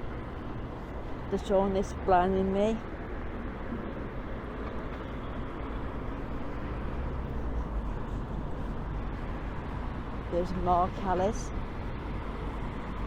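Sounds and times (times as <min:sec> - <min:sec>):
road traffic rumble: 0:00.0 - 0:13.0.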